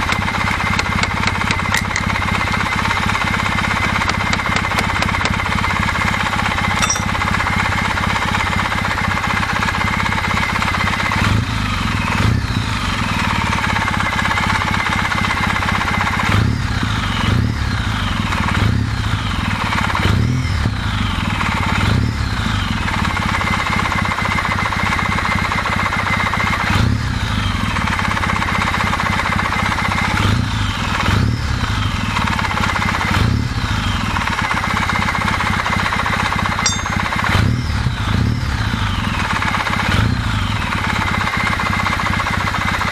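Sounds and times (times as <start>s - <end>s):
motorcycle engine idling: 0.0s - 42.9s
engine revving: 16.0s - 23.3s.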